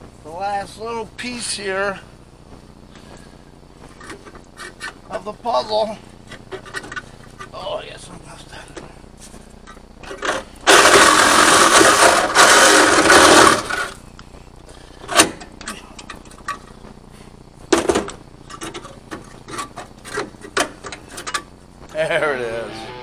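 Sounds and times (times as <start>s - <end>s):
power tool on sheet metal: 10.4s - 14.0s.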